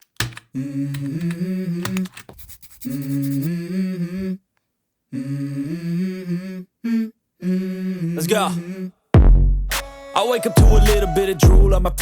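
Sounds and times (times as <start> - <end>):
man humming a melody: 9.9 - 12.0.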